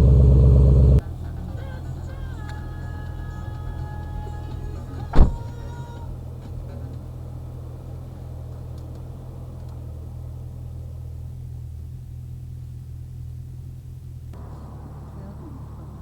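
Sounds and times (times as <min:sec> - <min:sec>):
low car exhaust drone: 0:00.0 - 0:16.0
sharp loud thump: 0:05.1 - 0:05.6.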